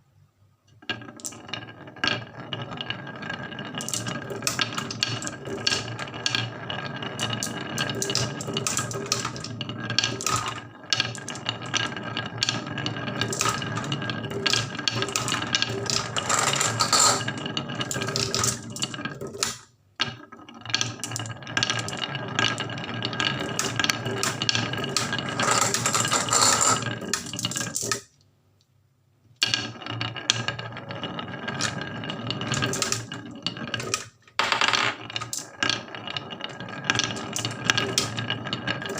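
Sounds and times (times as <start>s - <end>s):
marbles rolling down a wooden run: 0.8s - 28.2s, 29.4s - 38.9s.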